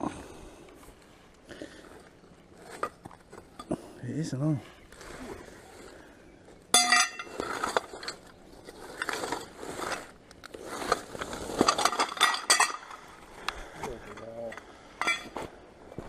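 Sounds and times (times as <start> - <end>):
metal scaffolding fittings clanking: 6.8 - 8.2, 11.6 - 13.0.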